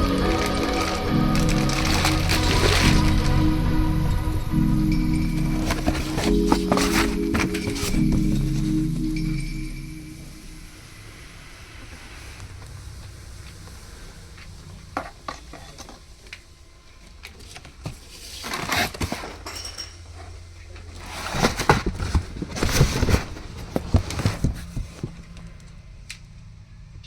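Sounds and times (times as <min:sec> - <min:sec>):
low steady hum: 0:00.0 - 0:15.9.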